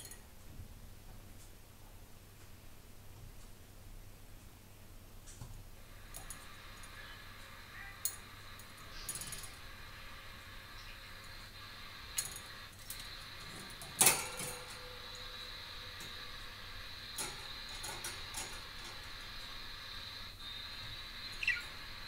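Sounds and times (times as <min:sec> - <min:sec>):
mirror clinking on cage bars: 0:00.0 - 0:00.2, 0:06.1 - 0:07.0, 0:08.0 - 0:09.7, 0:12.1 - 0:16.2, 0:17.1 - 0:19.2.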